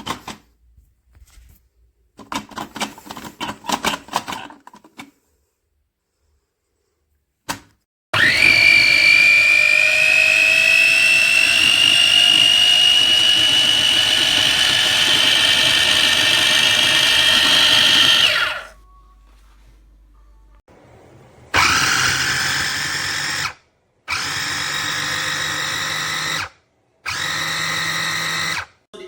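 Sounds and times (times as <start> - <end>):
small electric motor whining: 8.2 - 18.8.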